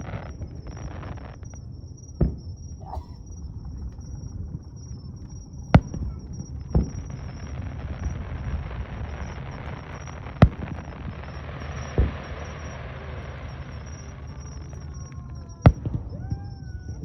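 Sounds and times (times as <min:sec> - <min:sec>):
steady low rumble: 0:00.0 - 0:16.9
fireworks booming: 0:00.0 - 0:17.0.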